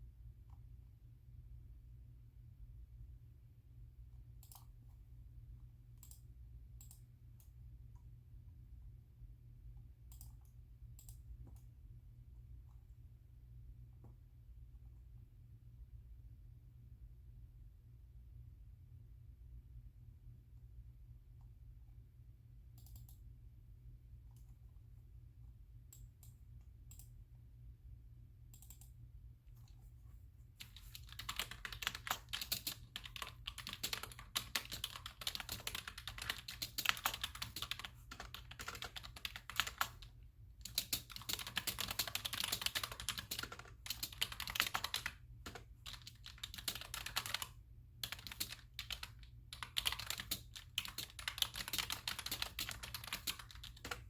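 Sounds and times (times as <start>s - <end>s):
keyboard typing: 4.4s - 4.8s, 30.6s - 54.0s.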